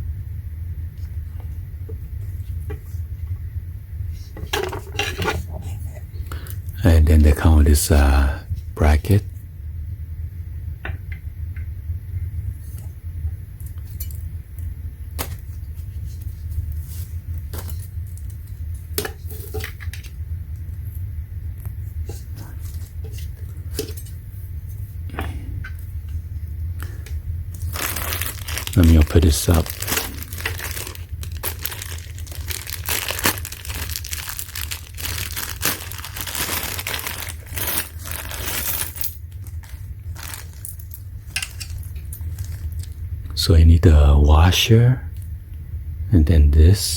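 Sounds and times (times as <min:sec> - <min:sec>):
low hum: 0:00.0 - 0:46.9
packaging crinkling and tearing: 0:26.8 - 0:43.0.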